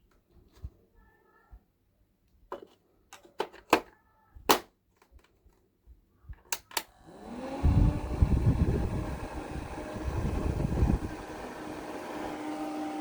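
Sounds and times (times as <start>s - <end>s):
fan motor spinning up with whine: 7.0s - 13.0s.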